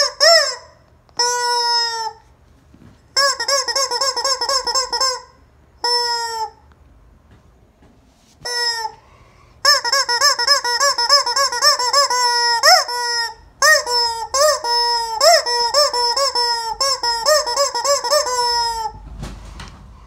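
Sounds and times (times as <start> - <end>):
rubber chicken toy squeaking: 0.0 - 2.3, 3.1 - 6.6, 8.4 - 9.0, 9.6 - 19.0.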